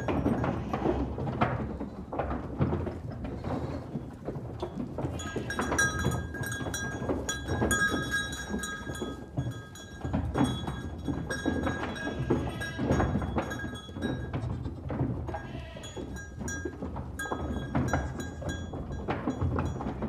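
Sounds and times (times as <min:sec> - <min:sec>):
hooves clattering and shuffling: 0:00.0 - 0:20.0
livestock bells clinking: 0:04.6 - 0:20.0.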